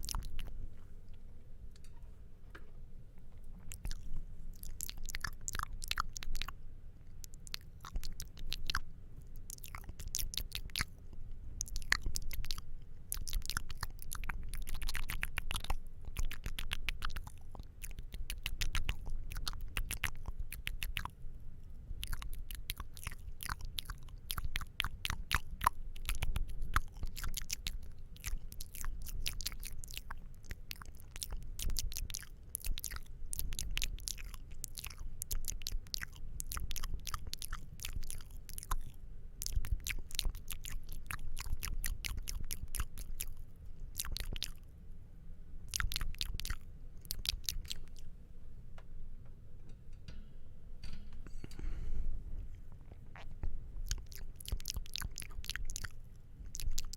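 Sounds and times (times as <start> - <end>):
wet mouth clicks and smacks: 0.0 - 0.6, 3.6 - 6.6, 7.2 - 21.1, 22.0 - 44.6, 45.7 - 48.1, 52.6 - 56.9.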